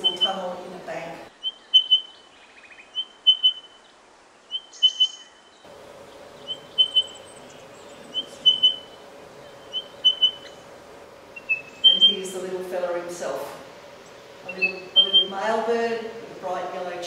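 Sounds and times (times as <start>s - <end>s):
faint steady hum: 0.0s - 2.3s, 5.6s - 17.0s
bird whistling call: 1.4s - 3.8s, 4.5s - 5.4s, 6.4s - 10.6s, 11.4s - 12.4s, 14.5s - 15.4s.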